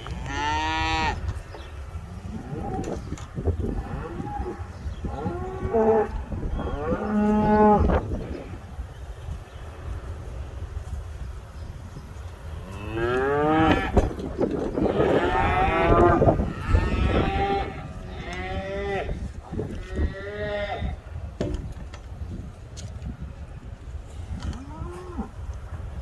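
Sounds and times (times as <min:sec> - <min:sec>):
cattle mooing: 0:00.1 - 0:01.2, 0:12.7 - 0:14.0, 0:14.8 - 0:19.2.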